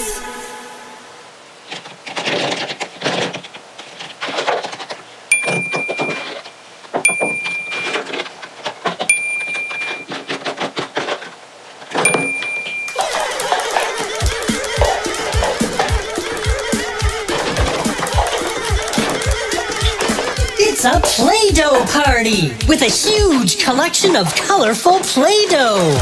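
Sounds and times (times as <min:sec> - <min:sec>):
bright electronic dings: 0:05.3 - 0:06.4, 0:07.1 - 0:08.0, 0:09.1 - 0:10.1, 0:12.1 - 0:13.0
small hard objects clicking: 0:12.9 - 0:21.9.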